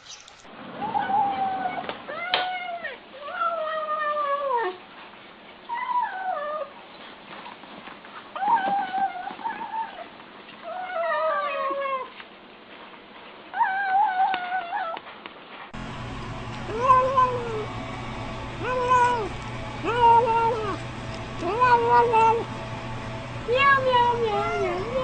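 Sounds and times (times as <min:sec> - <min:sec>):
cat meowing: 0:18.6 - 0:20.8.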